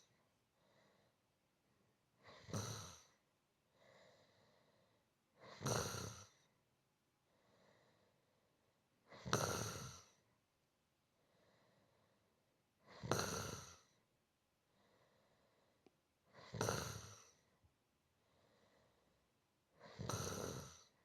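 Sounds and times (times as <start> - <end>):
faint breaths: 0.0 - 1.4, 2.2 - 6.6, 7.2 - 10.3, 11.1 - 21.0
person snoring: 2.2 - 3.2, 5.4 - 6.5, 9.1 - 10.2, 12.9 - 14.0, 16.3 - 17.4, 19.8 - 21.0.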